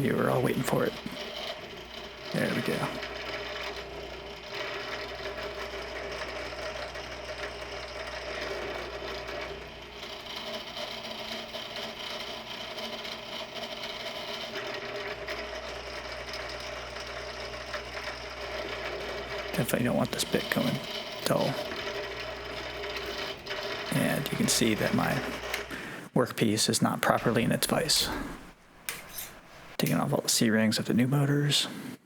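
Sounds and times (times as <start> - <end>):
drill press cutting metal: 0.0 - 30.1.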